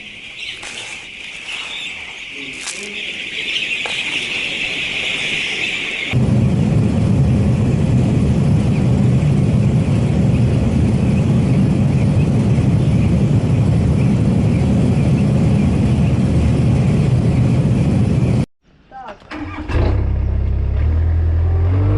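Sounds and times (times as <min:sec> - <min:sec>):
heavy engine running: 0:06.1 - 0:18.4.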